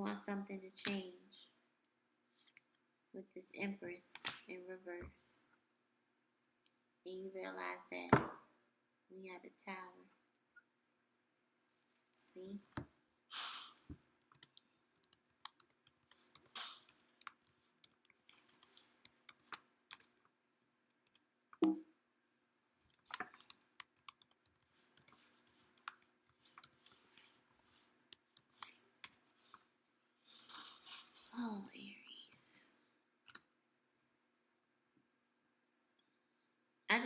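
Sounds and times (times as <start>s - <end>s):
cards being shuffled: 23.0s - 28.8s.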